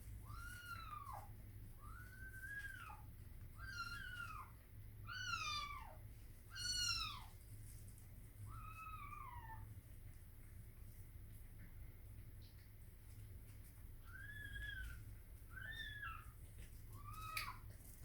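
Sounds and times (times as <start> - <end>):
cat meowing: 3.6 - 7.3.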